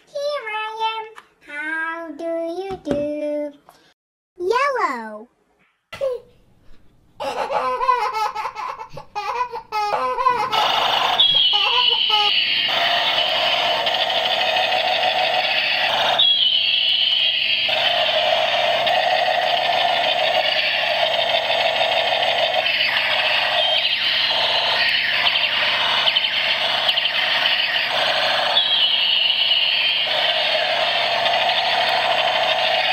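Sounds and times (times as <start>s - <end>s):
shrill electronic toy gun tone: 10.6s - 32.9s.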